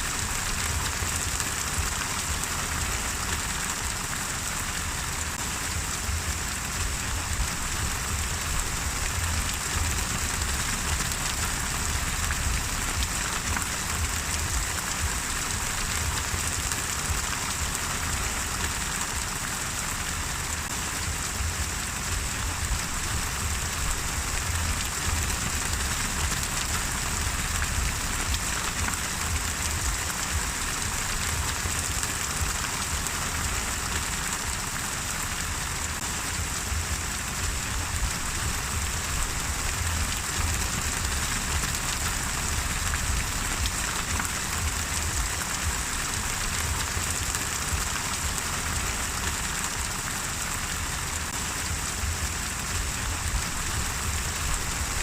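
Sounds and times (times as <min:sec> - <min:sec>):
rain pattering on a surface: 0:00.0 - 0:55.0
low rumble: 0:05.8 - 0:17.8, 0:21.1 - 0:32.0, 0:36.3 - 0:46.8.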